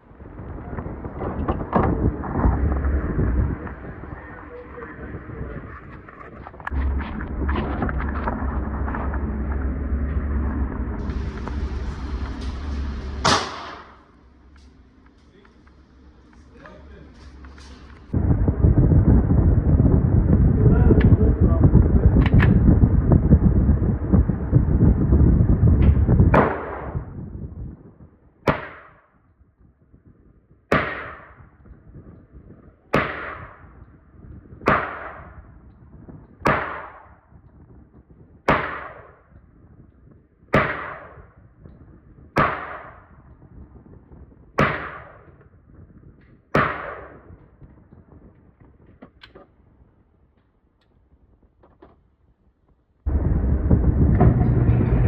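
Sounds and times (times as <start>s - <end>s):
gunshots echoing: 11.0s - 15.6s, 28.5s - 29.1s, 30.7s - 31.5s, 33.0s - 33.8s, 34.7s - 35.4s, 36.5s - 37.2s, 38.5s - 39.3s, 40.6s - 41.4s, 42.4s - 43.2s, 44.6s - 45.4s, 46.5s - 47.4s.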